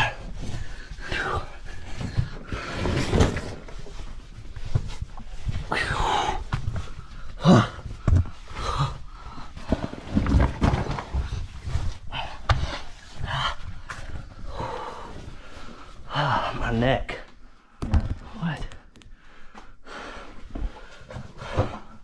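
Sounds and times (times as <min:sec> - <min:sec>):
heavy breathing: 0:00.0 - 0:16.7, 0:17.4 - 0:22.0.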